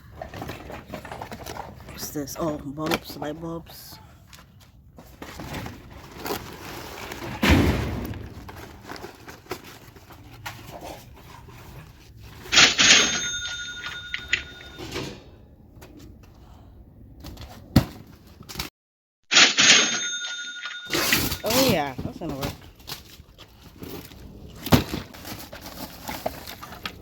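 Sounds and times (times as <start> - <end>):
bright ringing chime: 12.8 - 14.9, 19.5 - 20.9.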